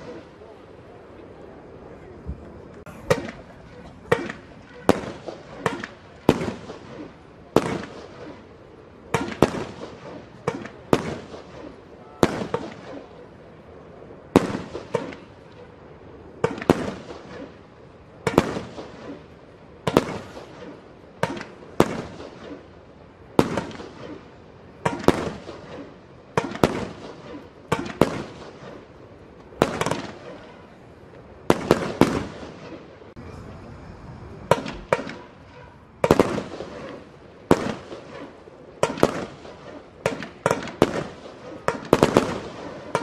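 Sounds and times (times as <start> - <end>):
firework crackle: 2.6 - 43.0
firework shells banging: 2.7 - 8.5.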